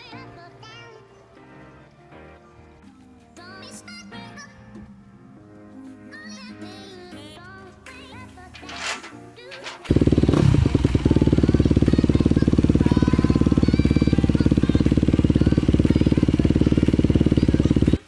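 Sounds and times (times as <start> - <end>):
motorbike engine idling: 8.5 - 18.0.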